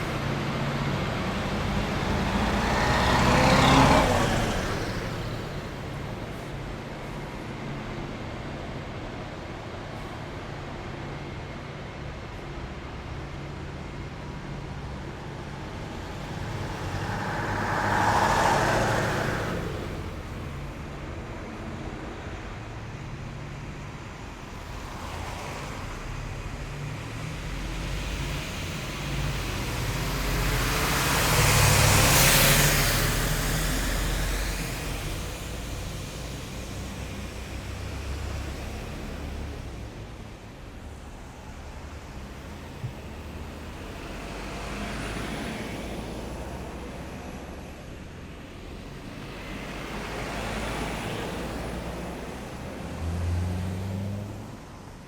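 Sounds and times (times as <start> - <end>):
military vehicles driving past: 0.0 - 55.0
low engine rumble: 13.2 - 21.4.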